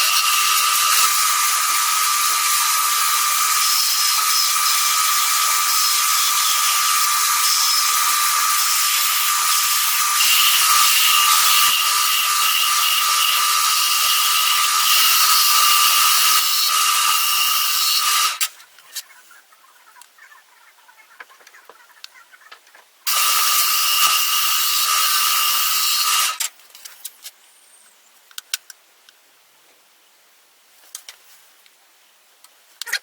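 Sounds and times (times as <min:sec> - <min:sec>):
power tool whining: 0:00.0 - 0:18.5, 0:23.1 - 0:26.5.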